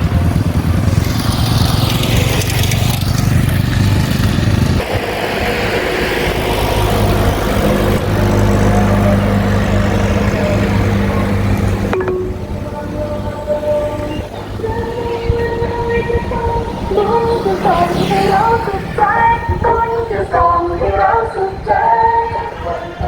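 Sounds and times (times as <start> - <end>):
vehicle engine running: 0.0 - 23.0.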